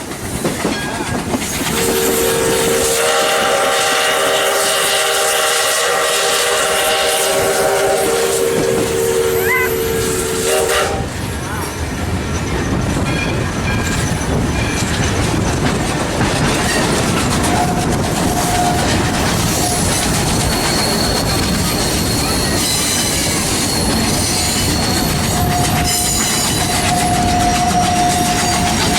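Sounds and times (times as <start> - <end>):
train cars rumbling on rails: 0.0 - 28.9
steam locomotive whistle: 1.7 - 11.2, 17.4 - 28.9.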